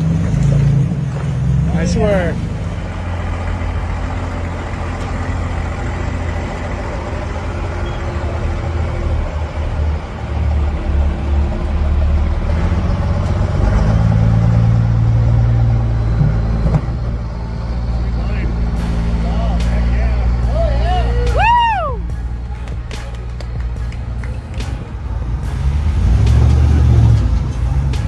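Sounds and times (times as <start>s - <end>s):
engine running and revving: 0.0s - 28.0s.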